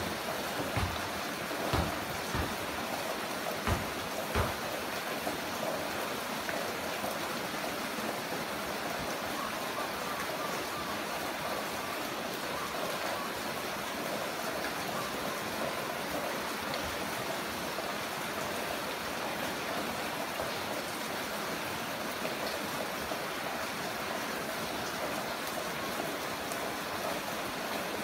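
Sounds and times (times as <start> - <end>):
heavy rain falling: 0.0 - 28.0
drops landing with dull thud: 0.6 - 4.8.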